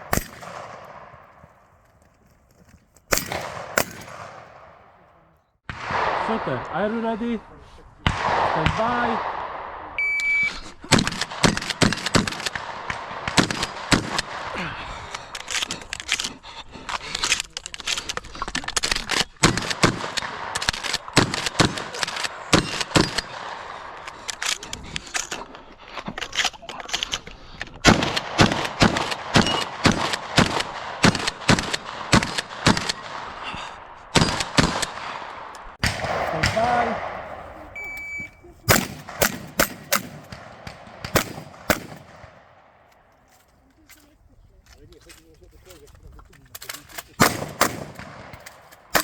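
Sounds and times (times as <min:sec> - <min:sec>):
shotgun fire: 0:00.0 - 0:05.1, 0:05.7 - 0:06.7, 0:27.9 - 0:43.1, 0:47.1 - 0:49.0.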